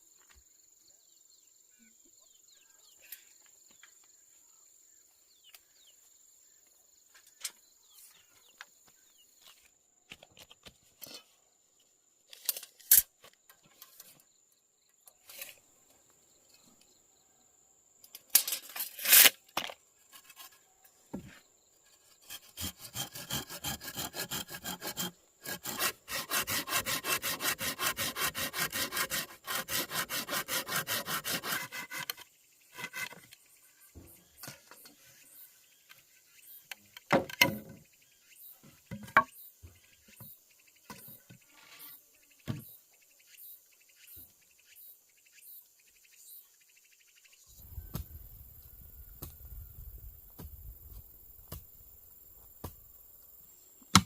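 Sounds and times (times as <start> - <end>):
hand saw cutting wood: 21.9 - 33.3
wood knocks and taps: 37.0 - 37.8, 38.9 - 39.8.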